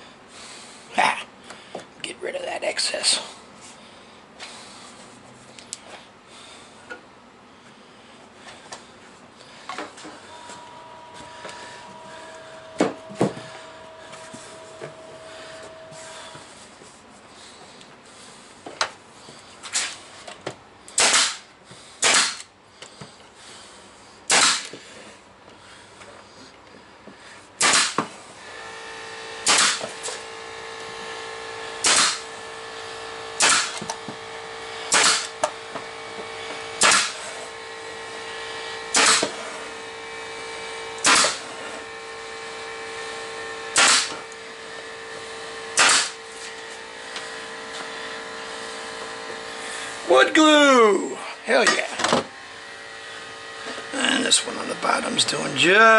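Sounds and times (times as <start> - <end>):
machine humming: 9.4 - 17.8, 28.3 - 55.9
sharp bangs: 21.0 - 22.4, 29.4 - 29.9, 38.9 - 39.4, 43.7 - 44.3, 45.8 - 46.2.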